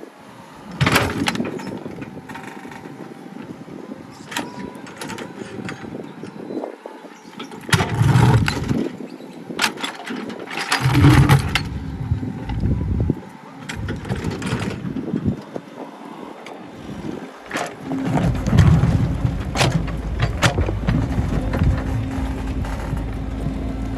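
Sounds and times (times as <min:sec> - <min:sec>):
excavator engine straining: 0:07.3 - 0:23.9.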